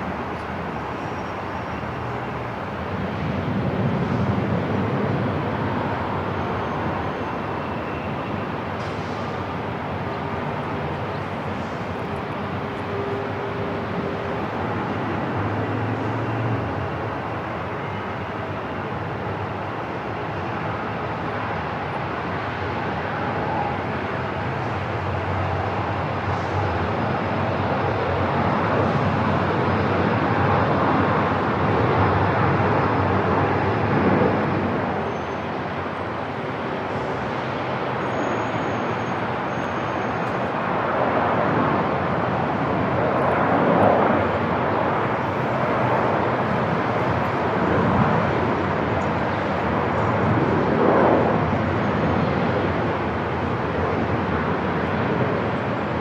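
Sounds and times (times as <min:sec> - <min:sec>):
aircraft engine rushing: 0:00.0 - 0:56.0.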